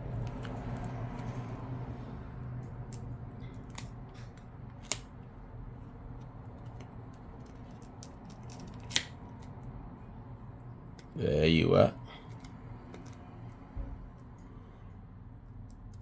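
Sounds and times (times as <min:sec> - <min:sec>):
metal tool prying plastic clicks: 0:06.6 - 0:09.5.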